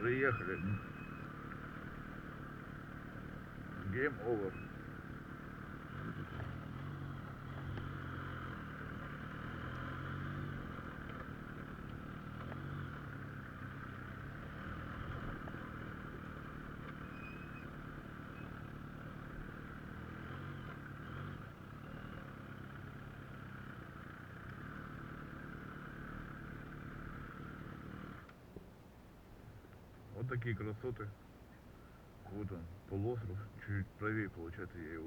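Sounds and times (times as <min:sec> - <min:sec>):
vehicle engine running at low revs: 0:00.0 - 0:35.0.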